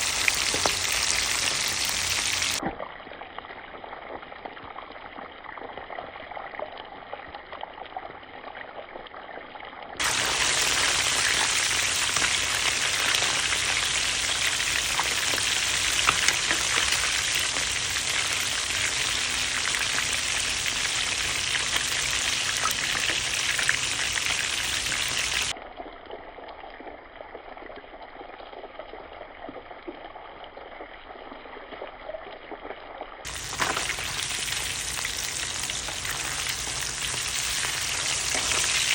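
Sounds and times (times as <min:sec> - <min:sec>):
fish sizzling in hot oil: 0:00.0 - 0:02.6, 0:10.0 - 0:25.5, 0:33.2 - 0:38.9.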